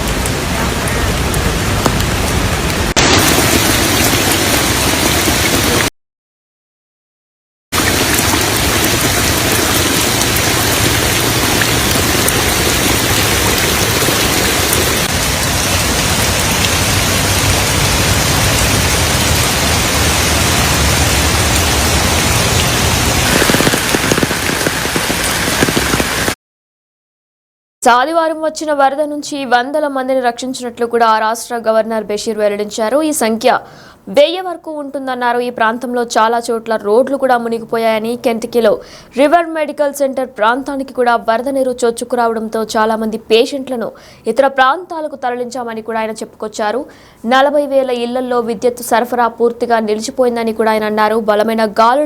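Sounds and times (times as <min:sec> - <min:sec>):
heavy rain falling: 0:00.0 - 0:05.9, 0:07.8 - 0:26.4.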